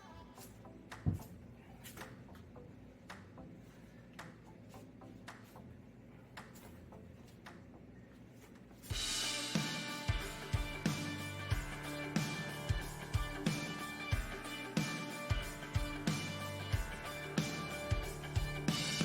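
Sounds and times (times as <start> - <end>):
guitar music: 9.0 - 19.0.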